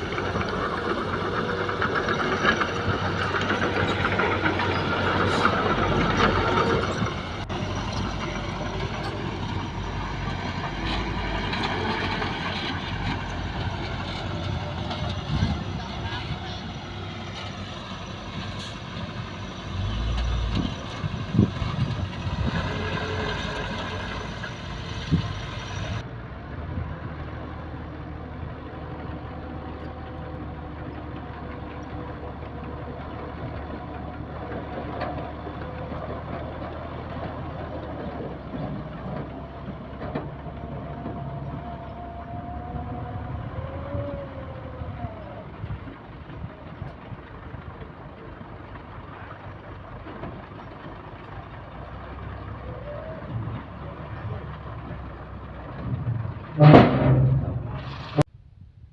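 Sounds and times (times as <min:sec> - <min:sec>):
heavy diesel machinery running: 0:00.0 - 0:58.3
loud metal clanks: 0:56.0 - 0:58.2.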